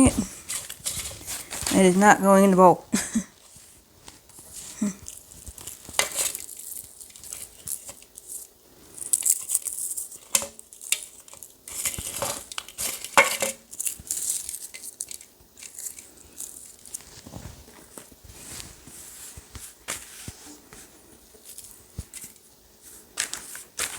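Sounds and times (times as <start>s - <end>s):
dry herbs crumbled by hand: 4.6s - 18.2s.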